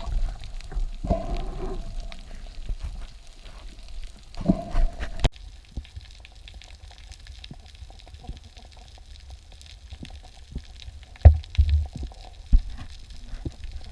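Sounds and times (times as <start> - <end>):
low underwater rumble: 0.0 - 5.5
underwater clicks crackling: 0.0 - 13.9.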